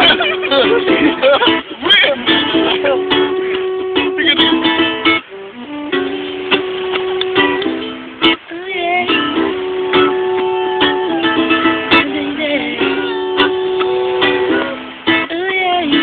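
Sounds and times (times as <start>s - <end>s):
acoustic strings strumming chords: 0.0s - 16.0s.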